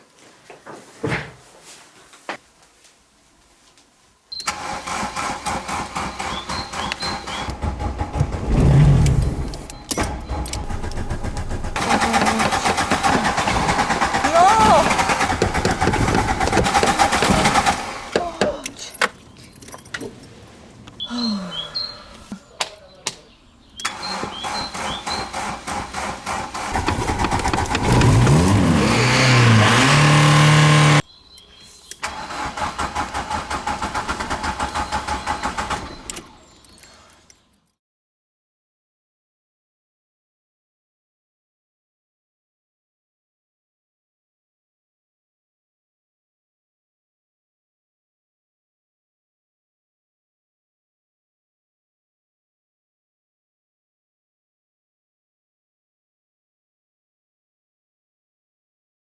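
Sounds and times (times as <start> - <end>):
car starter motor cranking: 4.4 - 18.2, 23.8 - 31.0, 32.0 - 36.4
starter click: 14.8 - 17.9, 26.7 - 29.6.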